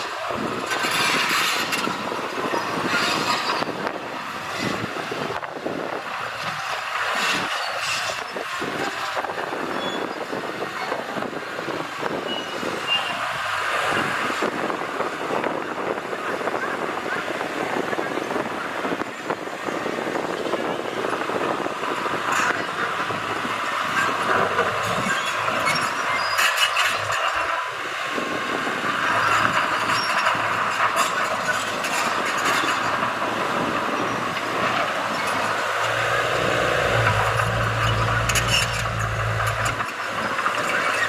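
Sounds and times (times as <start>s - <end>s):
heavy machinery clattering: 0.3s - 5.4s, 29.0s - 41.0s.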